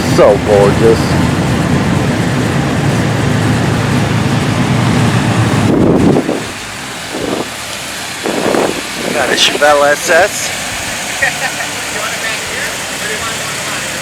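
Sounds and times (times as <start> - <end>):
car engine deep exhaust rumble: 0.0 - 14.0.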